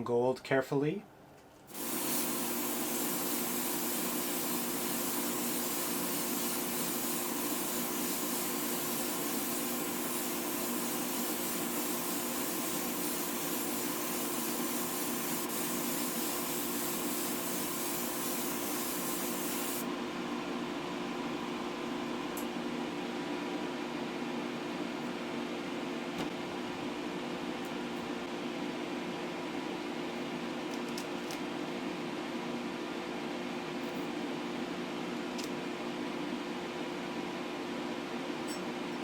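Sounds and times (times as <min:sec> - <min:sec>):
airbrush spraying hiss: 0:01.7 - 0:19.9.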